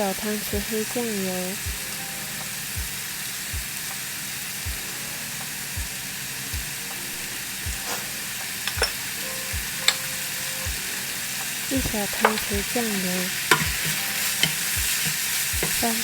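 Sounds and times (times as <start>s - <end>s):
meat sizzling in a pan: 0.0s - 16.0s
spatula clinking on pan: 8.6s - 9.2s, 12.2s - 16.0s.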